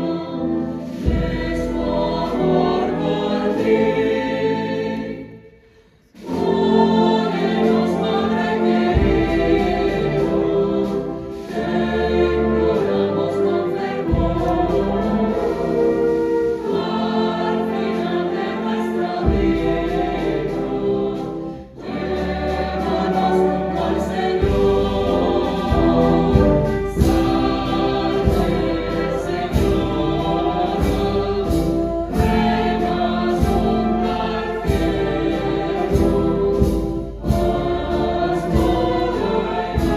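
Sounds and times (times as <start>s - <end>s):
choir singing a hymn: 0.0s - 39.9s.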